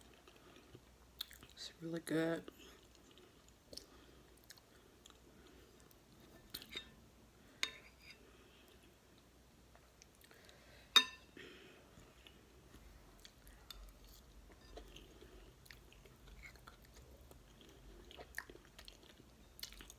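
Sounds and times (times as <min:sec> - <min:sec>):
person chewing: 0:00.0 - 0:01.6, 0:02.8 - 0:06.7, 0:13.2 - 0:19.9.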